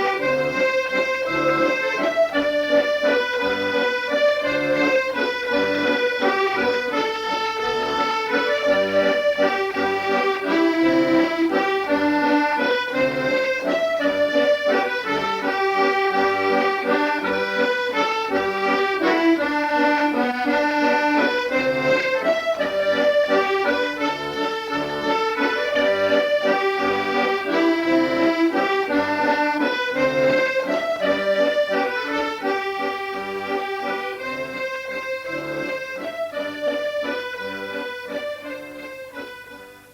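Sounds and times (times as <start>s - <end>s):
accordion playing a tune: 0.0s - 39.9s.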